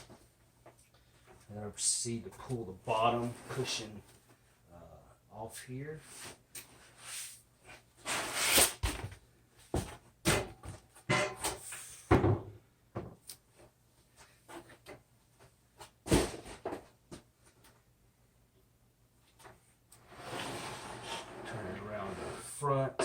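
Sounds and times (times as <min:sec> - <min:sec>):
foam scraping and rubbing: 0:20.0 - 0:22.8.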